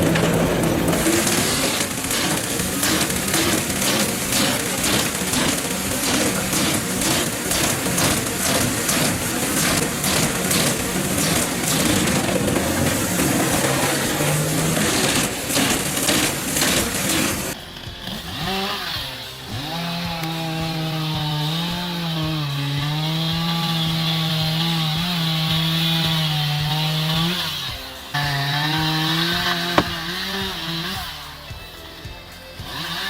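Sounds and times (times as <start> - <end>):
harsh crackling noise: 0.0 - 17.6
chainsaw cutting wood: 0.0 - 31.7, 32.6 - 33.0.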